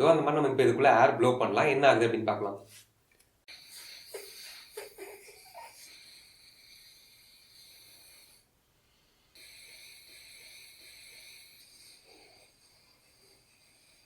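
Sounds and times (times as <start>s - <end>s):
breath blown through balloon: 3.5s - 8.5s, 9.4s - 14.0s.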